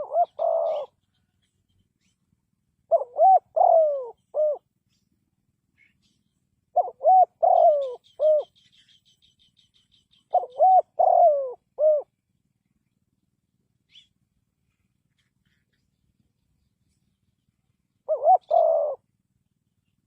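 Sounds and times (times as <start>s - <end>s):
dove cooing: 0.0s - 2.2s, 2.9s - 4.7s, 5.8s - 12.1s, 18.0s - 19.1s.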